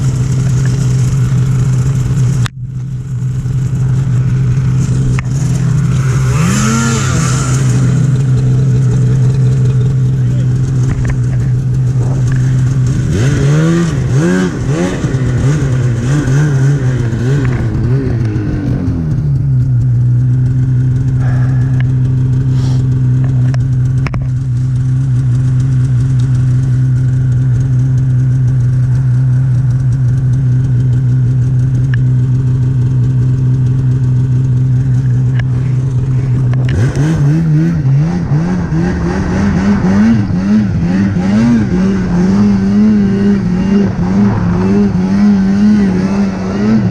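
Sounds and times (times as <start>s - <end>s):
snowmobile engine revving: 3.2s - 46.9s.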